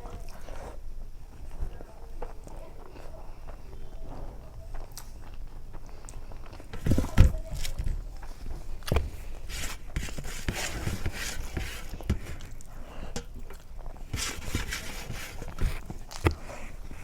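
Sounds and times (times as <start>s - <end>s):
wet chewing and lip-smacking: 0.0s - 4.0s, 4.7s - 6.7s, 11.9s - 14.5s, 15.4s - 17.0s.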